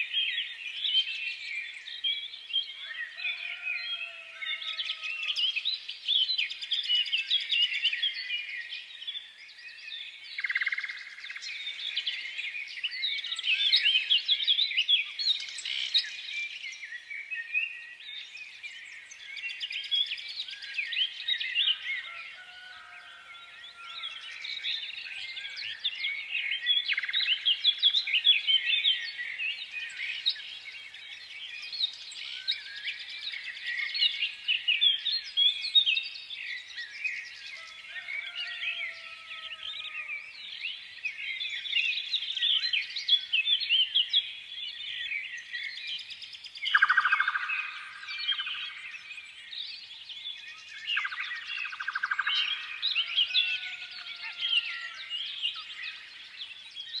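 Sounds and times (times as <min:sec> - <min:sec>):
small birds chirping: 0:23.1 - 0:53.2.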